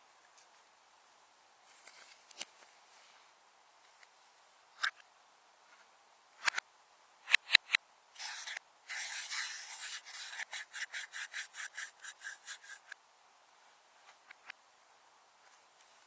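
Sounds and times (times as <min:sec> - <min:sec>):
sticky rubbing of slime: 0:07.6 - 0:13.0.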